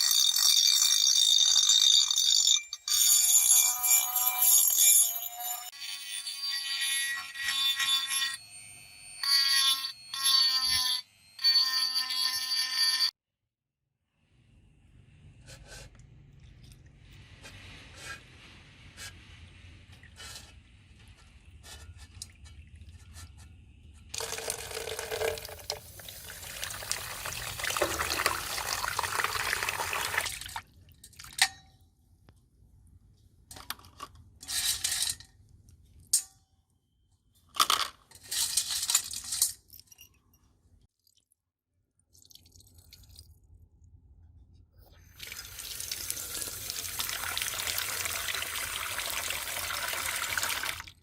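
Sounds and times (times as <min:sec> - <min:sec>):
water running from a tap: 0:24.2 - 0:30.6, 0:45.2 - 0:51.0.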